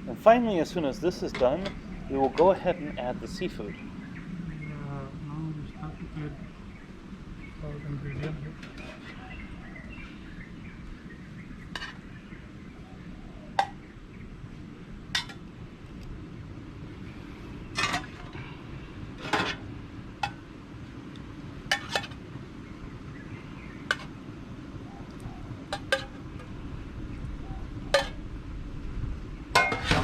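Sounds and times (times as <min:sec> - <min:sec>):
low background noise: 0:00.0 - 0:30.0
utensils clinking on dishes: 0:21.7 - 0:22.2, 0:29.6 - 0:30.0.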